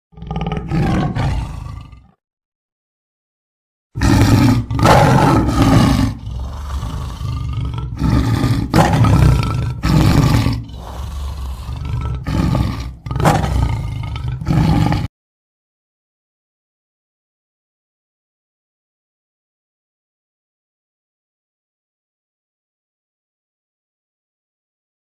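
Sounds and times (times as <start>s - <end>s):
tiger roaring: 0.1s - 2.2s, 4.0s - 15.1s.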